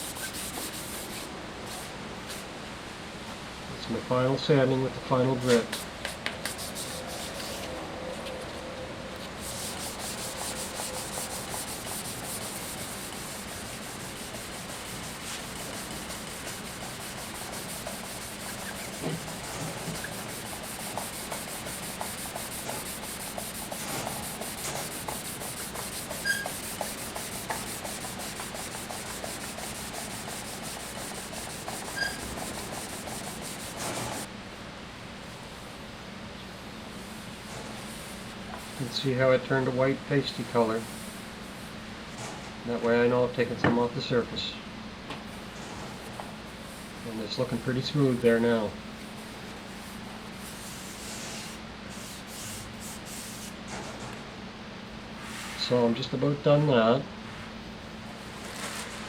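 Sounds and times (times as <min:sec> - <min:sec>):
wet sanding hiss: 0:00.0 - 0:01.3, 0:09.4 - 0:34.3.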